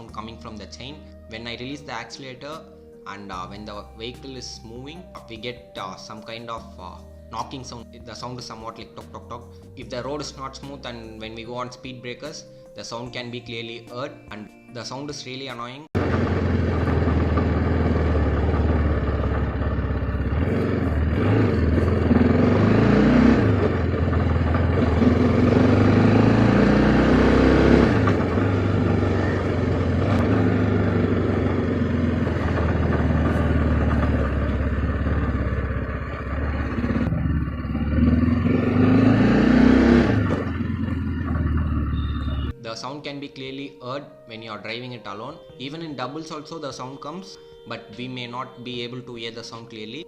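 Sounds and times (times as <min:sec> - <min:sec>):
motorcycle engine revving: 0:16.0 - 0:42.6.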